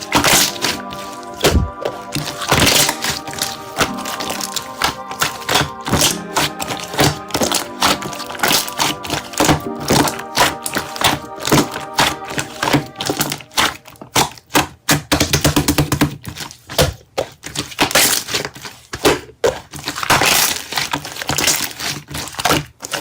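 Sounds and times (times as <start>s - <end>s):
hands squelching slime: 0.0s - 15.6s, 16.2s - 23.0s.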